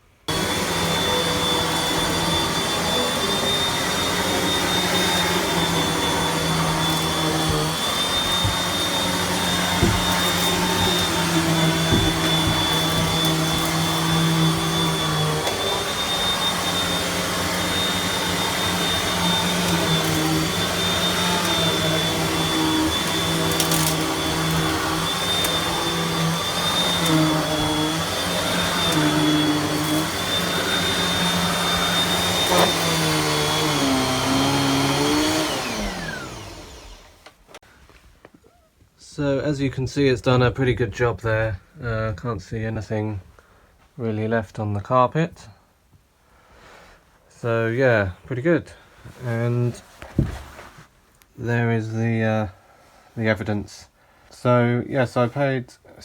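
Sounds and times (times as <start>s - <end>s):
vacuum cleaner running: 0.3s - 37.6s.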